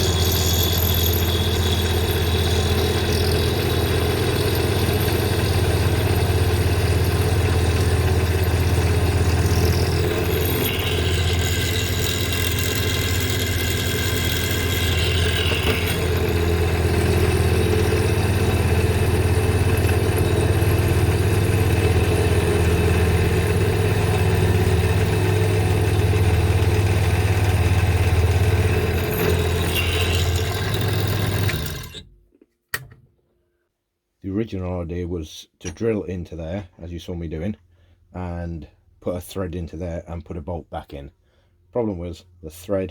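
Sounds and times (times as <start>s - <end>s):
drill bit whine: 0.0s - 32.1s
electric drill boring into steel: 0.0s - 32.1s.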